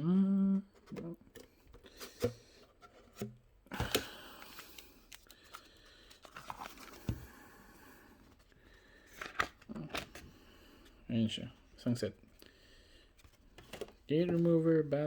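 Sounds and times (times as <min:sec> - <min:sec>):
packaging rustling and scraping: 0:04.4 - 0:07.3.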